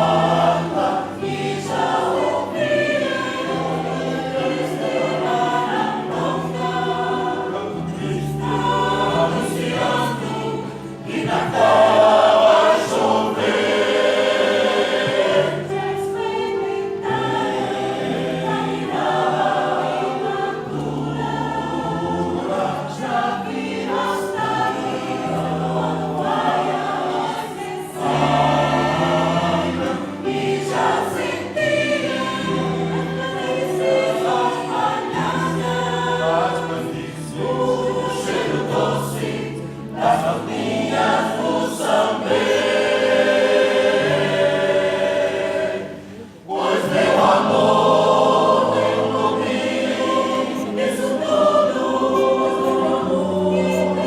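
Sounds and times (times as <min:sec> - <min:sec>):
choir singing in parts: 0:00.0 - 0:54.0
piano accompaniment: 0:00.0 - 0:54.0.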